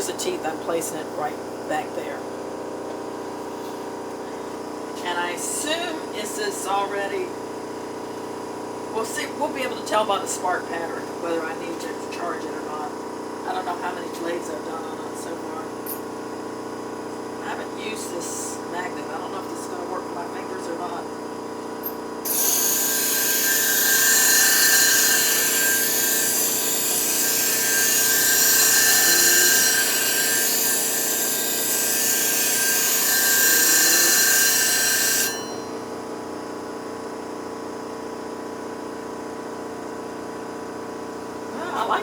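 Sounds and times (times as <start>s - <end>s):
machine motor humming: 21.8s - 36.0s
blade grinding with hiss: 22.3s - 35.8s.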